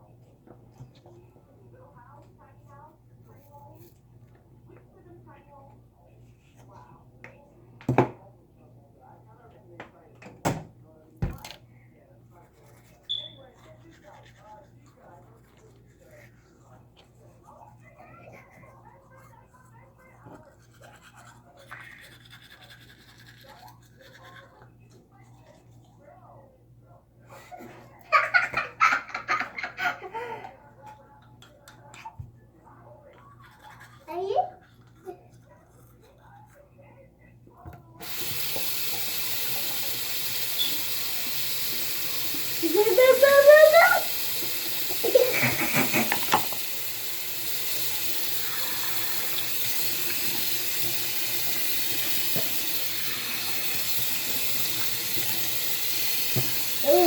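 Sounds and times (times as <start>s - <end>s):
child giggling: 28.0s - 30.5s, 44.9s - 46.3s
sink tap running: 38.0s - 57.0s.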